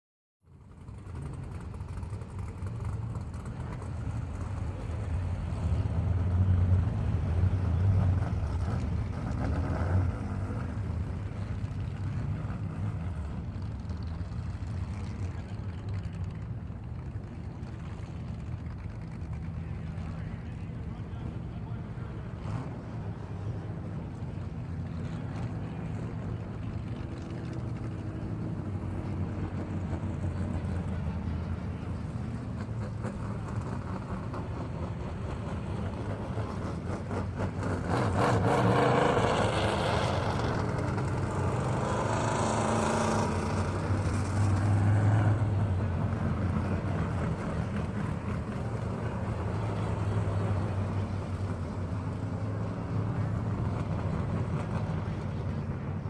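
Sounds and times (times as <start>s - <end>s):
race vehicle engines running: 0.5s - 56.0s.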